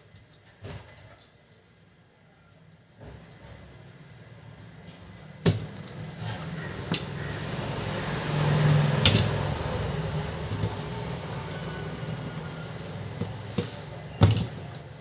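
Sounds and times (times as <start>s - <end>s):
printer drive grinding rumble: 6.0s - 14.3s.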